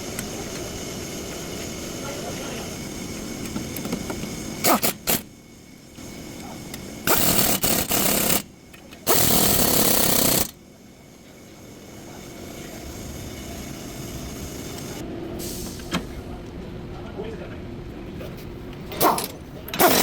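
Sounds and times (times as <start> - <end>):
impact wrench bursts: 4.6 - 5.3, 7.0 - 10.6, 19.0 - 20.0.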